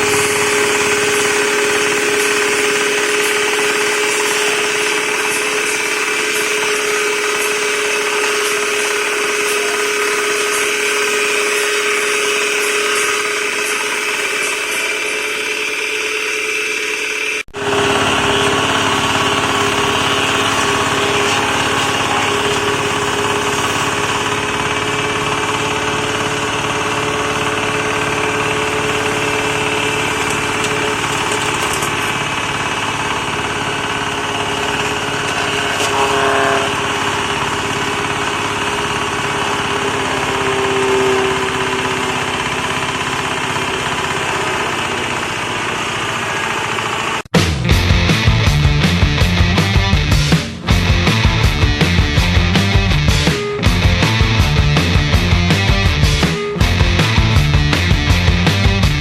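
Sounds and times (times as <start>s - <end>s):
branch shredder engine running: 0.0s - 59.0s.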